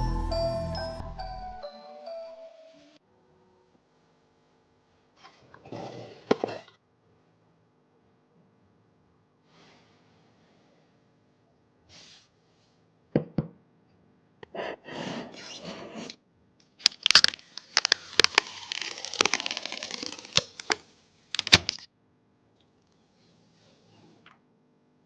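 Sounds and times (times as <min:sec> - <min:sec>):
packaging clicking and snapping: 0:16.8 - 0:20.8, 0:21.4 - 0:21.9
packaging rustling and tearing: 0:16.8 - 0:21.9.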